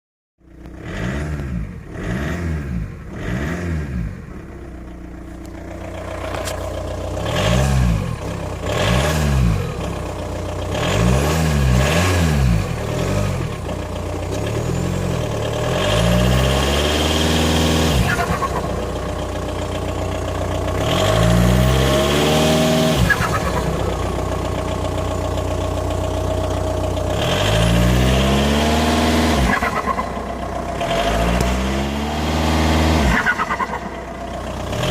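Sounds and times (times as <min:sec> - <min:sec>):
diesel engine revving: 0:00.6 - 0:34.9.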